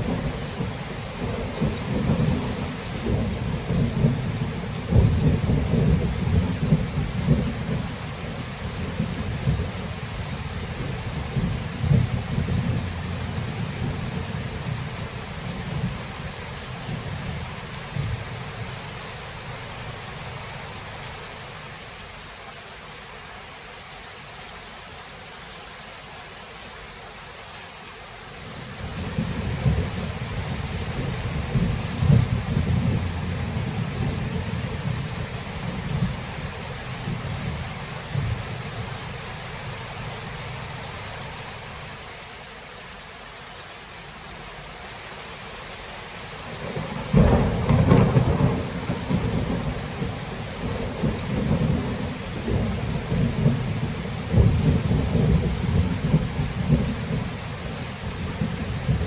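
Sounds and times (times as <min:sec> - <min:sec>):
rolling thunder rumble: 0:00.0 - 0:20.4, 0:28.7 - 0:39.1, 0:46.5 - 0:59.0
steady rain: 0:00.0 - 0:59.0.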